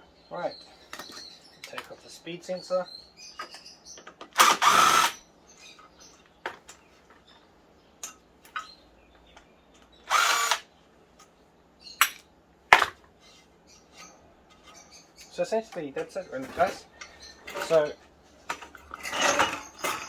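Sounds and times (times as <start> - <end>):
power drill whirring: 4.4 - 5.2, 10.1 - 10.7.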